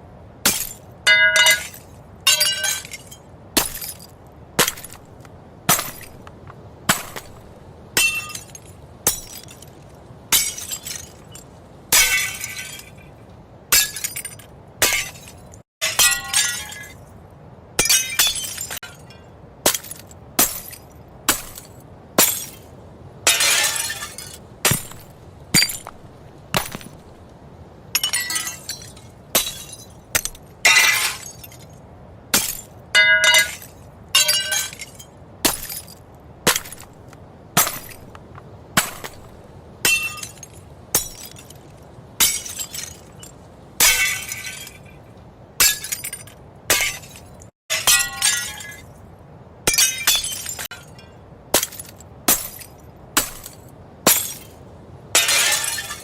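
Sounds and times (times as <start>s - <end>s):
glass smashing: 0.5s - 5.1s, 5.7s - 6.2s, 6.9s - 13.0s, 13.7s - 17.0s, 17.8s - 22.7s, 23.3s - 27.2s, 28.0s - 37.0s, 37.6s - 38.1s, 38.8s - 44.9s, 45.6s - 48.9s, 49.7s - 54.6s, 55.2s - 56.0s.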